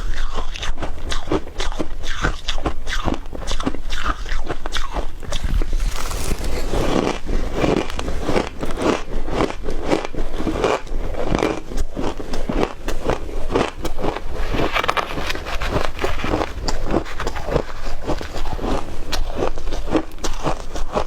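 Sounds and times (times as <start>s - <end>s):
person chewing shaved ice: 0.0s - 21.0s.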